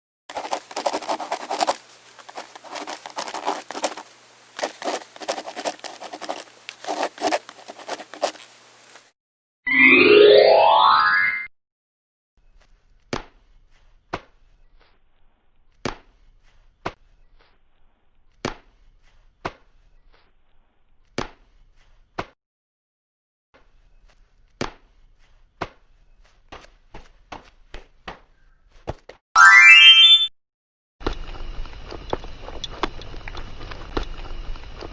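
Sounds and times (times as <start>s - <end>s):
rapid scratching strokes: 0.3s - 8.6s.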